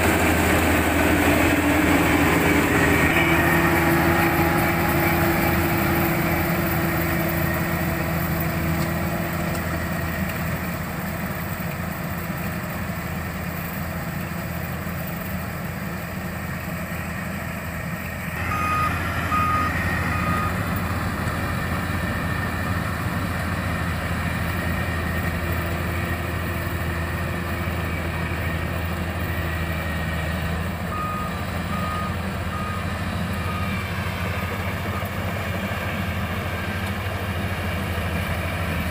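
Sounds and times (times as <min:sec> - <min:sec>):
combine harvester engine running: 0:00.0 - 0:38.9
reversing alarm beeps: 0:18.4 - 0:21.6, 0:30.9 - 0:34.0.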